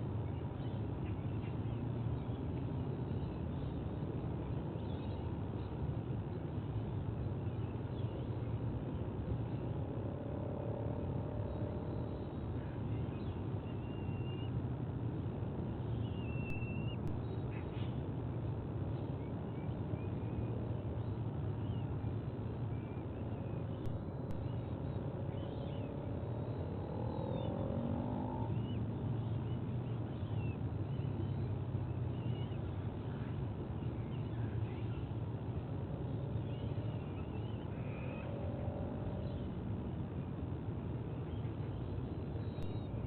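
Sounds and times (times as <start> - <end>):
low outdoor rumble: 0.0 - 43.0
drawn-out rising and falling calls: 21.5 - 40.3.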